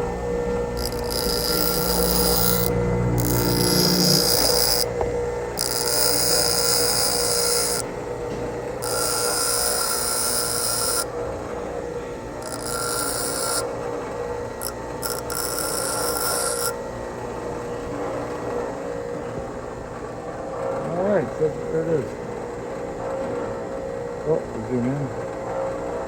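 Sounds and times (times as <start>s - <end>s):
drill bit grinding on wheel: 0.0s - 11.2s, 12.2s - 16.9s
bench grinder humming: 0.0s - 19.2s.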